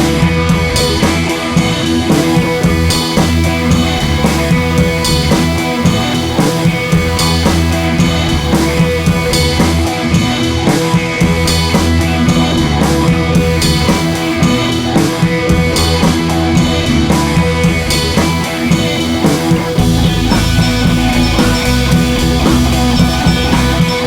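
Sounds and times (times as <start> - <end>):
rock music: 0.0 - 24.0.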